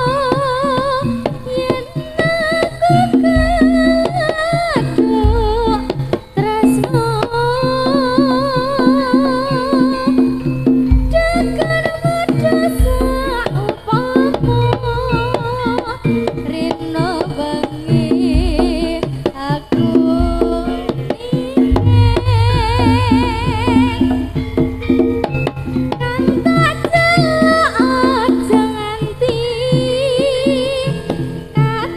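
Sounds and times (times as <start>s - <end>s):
hand drum strokes: 0.0s - 31.9s
deep sustained bass: 21.7s - 26.0s
melody with vibrato: 21.7s - 27.6s.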